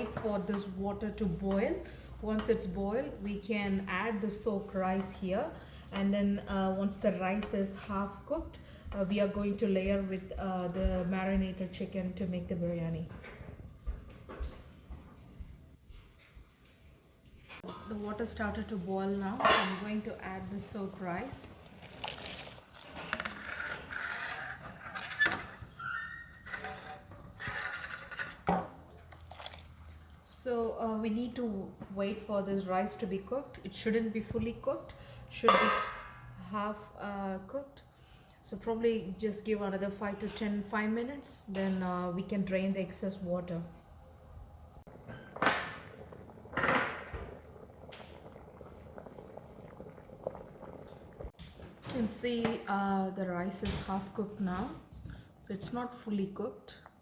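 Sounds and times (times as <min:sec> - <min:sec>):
boiling water bubbling: 0:17.6 - 0:36.4, 0:44.6 - 0:52.4
cookware clattering scrapes: 0:22.9 - 0:29.1.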